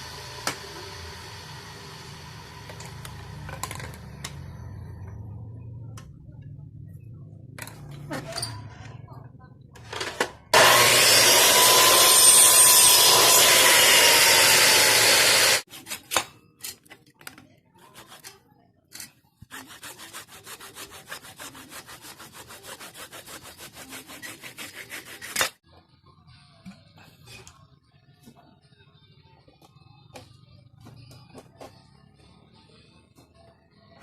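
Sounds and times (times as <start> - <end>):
rhythmic sawing or filing strokes: 10.6 - 16.1, 17.9 - 18.4, 19.4 - 25.6.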